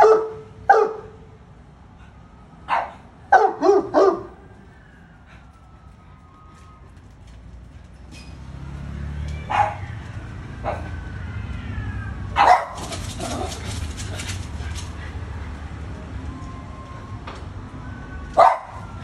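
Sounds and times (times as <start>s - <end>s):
dog barking: 0.0s - 1.2s, 2.7s - 4.4s, 9.5s - 10.0s, 10.6s - 11.0s, 12.4s - 13.8s, 18.4s - 18.8s.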